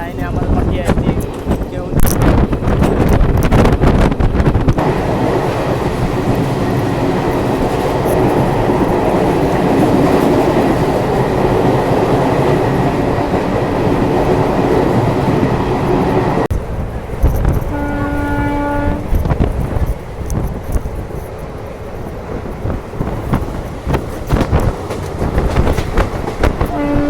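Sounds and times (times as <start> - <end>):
train wheels rumbling: 0.0 - 27.0
wind noise on microphone: 0.0 - 27.0.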